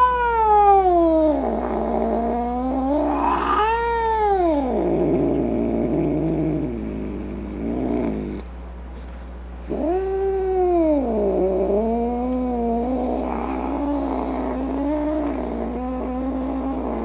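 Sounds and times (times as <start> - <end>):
angry cat yowling: 0.0 - 5.2, 9.7 - 17.0.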